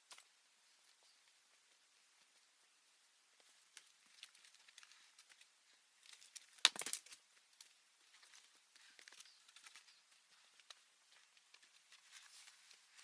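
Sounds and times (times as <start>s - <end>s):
dry forest debris crackling: 3.3s - 13.0s.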